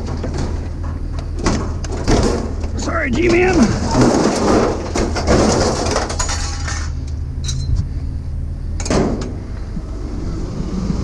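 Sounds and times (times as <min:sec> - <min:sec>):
low engine hum: 0:00.0 - 0:11.0
glass and metal items rattling: 0:03.3 - 0:07.8.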